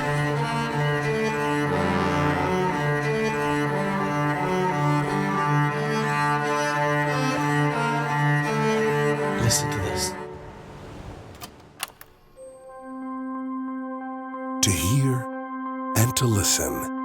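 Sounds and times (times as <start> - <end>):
slow low string notes: 0.0 - 10.7.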